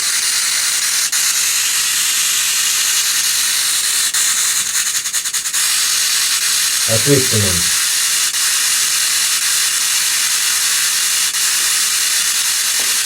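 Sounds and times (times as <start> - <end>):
loud static hiss: 6.9 - 7.8.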